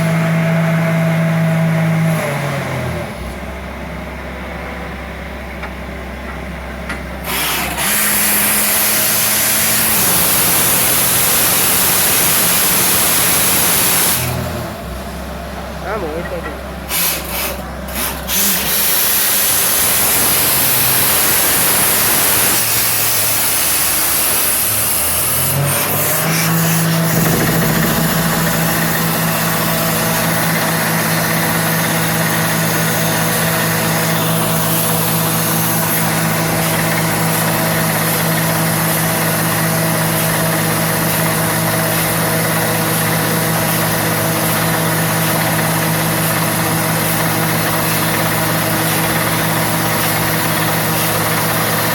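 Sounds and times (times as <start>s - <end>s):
drilling rig engine running: 26.2s - 32.2s.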